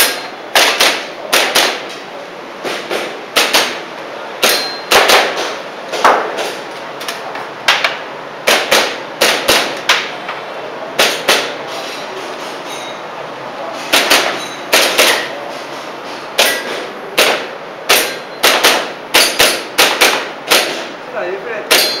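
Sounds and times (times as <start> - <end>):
airsoft pistol shots: 0.0 - 1.9, 4.4 - 6.3, 7.7 - 10.1, 13.9 - 15.3, 16.4 - 20.9, 21.7 - 22.0
metallic ring: 4.5 - 4.9, 12.6 - 13.1.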